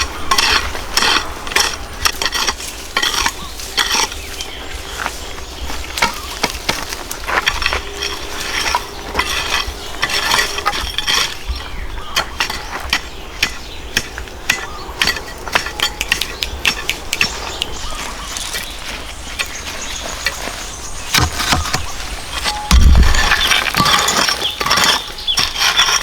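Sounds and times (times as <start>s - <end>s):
outdoor background noise: 0.0s - 26.0s
hand tools knocking and clinking: 6.0s - 18.7s, 21.1s - 26.0s.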